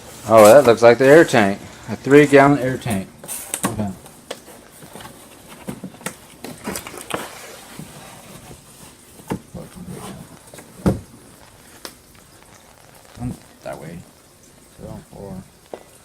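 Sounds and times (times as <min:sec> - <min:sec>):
cardboard box knocks and clatters: 0:04.9 - 0:11.1.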